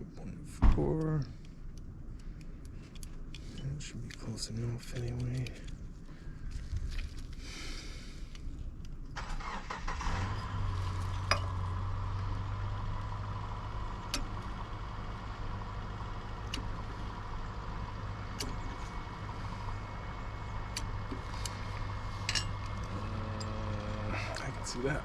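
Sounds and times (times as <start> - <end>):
sharp metallic clicks: 0.7 - 5.8
machine motor humming: 11.5 - 25.0.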